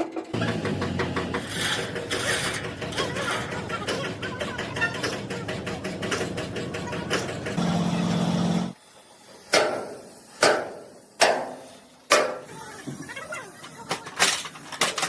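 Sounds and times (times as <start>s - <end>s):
machine rattling and humming: 0.0s - 8.8s.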